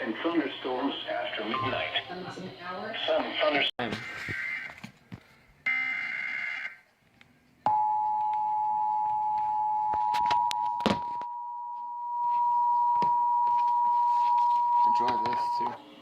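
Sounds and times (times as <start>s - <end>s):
two-tone alert signal: 1.6s - 2.0s, 7.7s - 15.8s.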